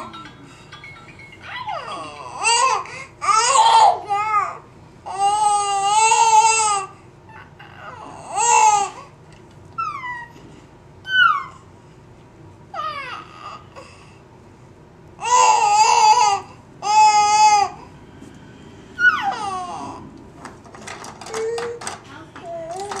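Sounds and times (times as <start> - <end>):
baby babbling and squealing: 11.1 - 11.6, 19.0 - 20.0.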